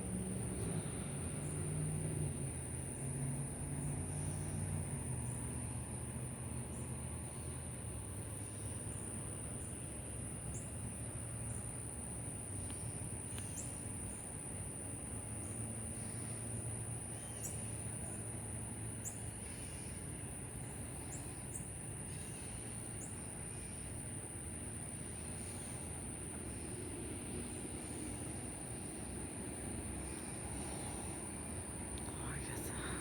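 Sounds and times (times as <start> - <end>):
night insects chorus: 0.0 - 33.0
low background rumble: 23.0 - 33.0.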